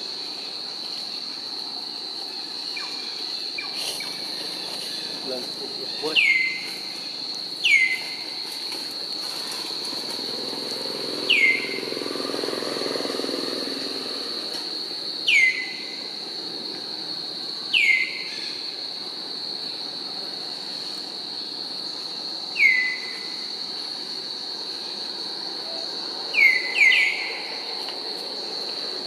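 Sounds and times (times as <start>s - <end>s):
high-pitched insect drone: 0.0s - 29.0s.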